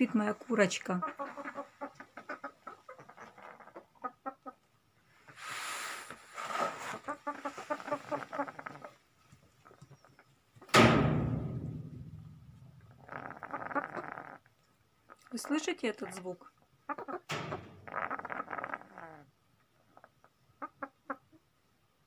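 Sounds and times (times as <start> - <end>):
hen clucking softly: 0.0 - 5.4, 6.8 - 10.4, 12.8 - 21.5
rustle: 0.0 - 21.7
sharp thump: 10.7 - 12.9
low rumble: 11.0 - 13.1.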